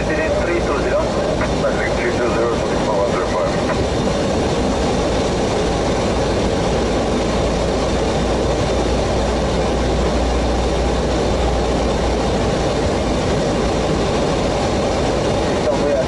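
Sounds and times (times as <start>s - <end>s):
airflow and engines in cockpit: 0.0s - 16.0s
deep rumble: 0.0s - 16.0s.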